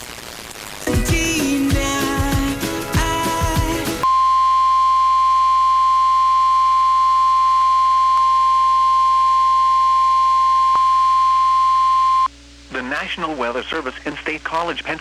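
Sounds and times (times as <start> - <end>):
music with drum beat: 0.9 - 4.1
loud single-pitch alarm tone: 4.0 - 12.3.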